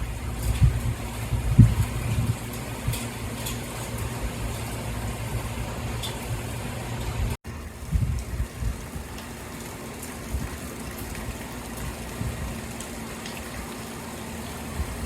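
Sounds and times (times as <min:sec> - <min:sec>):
rainwater falling and running: 0:00.0 - 0:15.0
faint water drips: 0:07.5 - 0:15.0.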